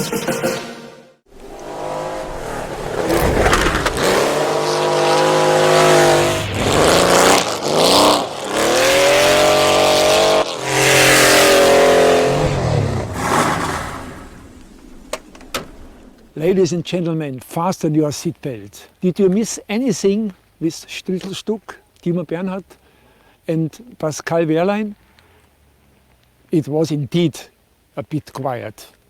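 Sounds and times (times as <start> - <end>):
race car engine accelerating: 1.3 - 14.6.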